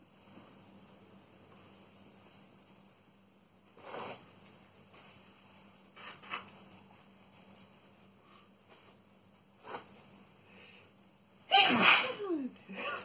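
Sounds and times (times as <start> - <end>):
loud sneeze: 11.5 - 13.0.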